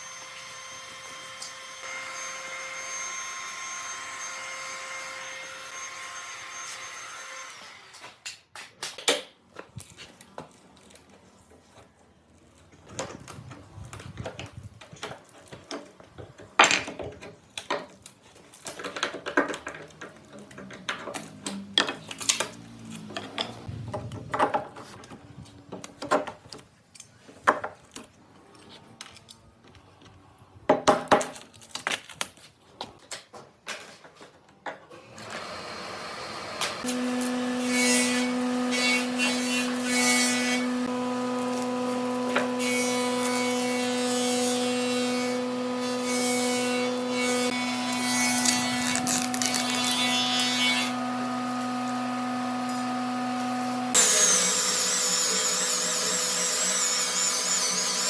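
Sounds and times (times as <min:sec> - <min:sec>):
power tool whining: 0:00.0 - 0:08.0, 0:34.9 - 0:58.0
tools and wood clattering: 0:12.5 - 0:28.2.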